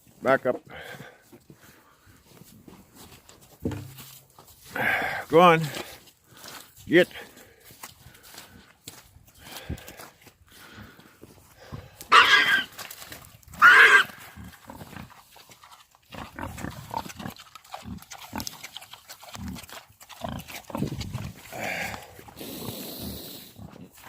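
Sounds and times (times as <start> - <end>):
farm animal harsh calls: 12.1 - 12.8, 13.5 - 15.0
low grunting: 20.8 - 22.7.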